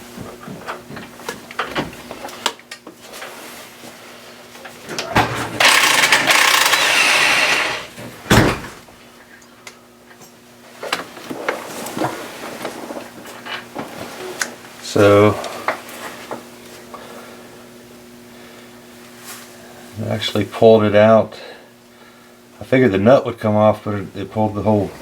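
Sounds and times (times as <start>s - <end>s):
loud metal clunk: 5.2s - 8.8s
impact wrench hammering: 5.6s - 7.9s.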